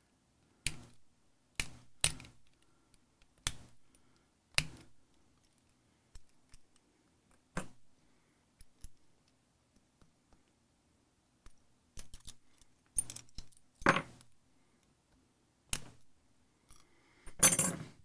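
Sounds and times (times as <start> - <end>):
small metal lock parts clicking: 1.6 - 7.8, 8.6 - 9.9, 11.4 - 14.2.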